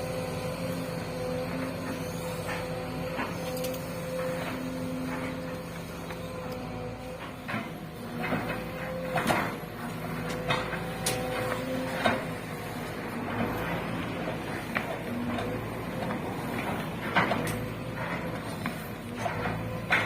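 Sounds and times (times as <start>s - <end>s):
excavator engine and hydraulics hum: 0.0s - 20.0s
sharp knocks and scrapes: 7.0s - 20.0s.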